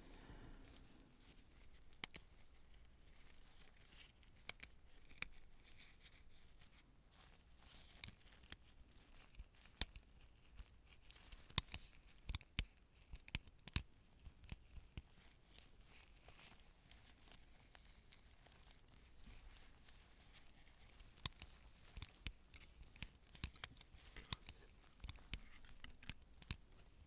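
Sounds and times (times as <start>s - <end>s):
surgical instruments clicking: 20.7s - 27.0s.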